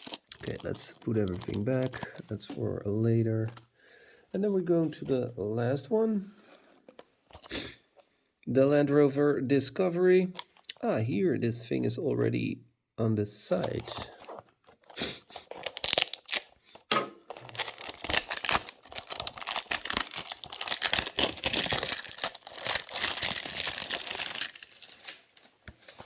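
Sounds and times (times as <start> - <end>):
packaging crinkling and tearing: 0.0 - 3.6, 7.3 - 7.6, 13.6 - 26.0.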